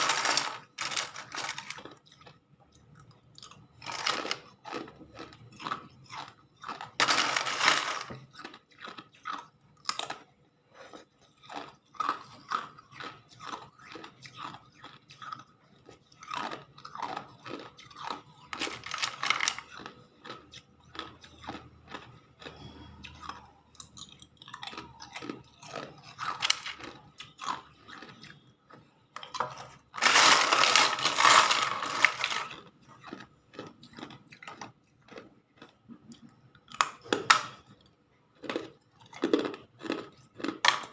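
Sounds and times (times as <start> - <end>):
ice being crunched: 0.0 - 2.0, 7.0 - 8.2, 30.0 - 32.6.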